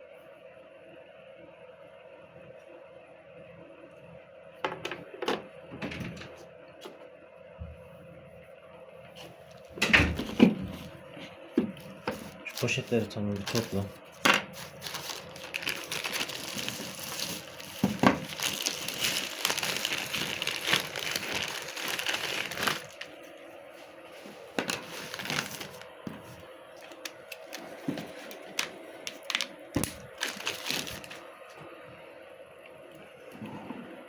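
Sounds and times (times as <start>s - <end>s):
plastic bags crinkling: 11.7s - 23.3s, 24.2s - 31.3s.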